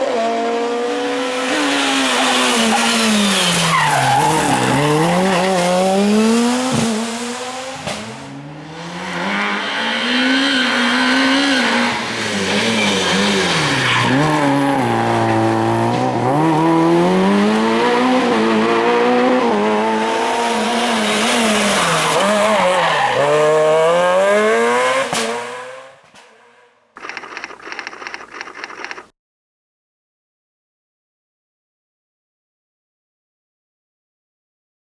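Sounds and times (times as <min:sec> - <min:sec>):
rally car engine revving: 0:00.0 - 0:26.0.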